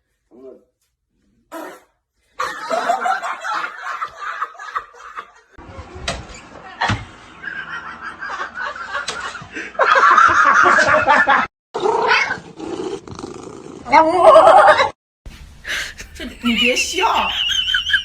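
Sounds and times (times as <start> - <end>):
people laughing: 2.4 - 5.6, 6.7 - 11.5, 15.7 - 18.0.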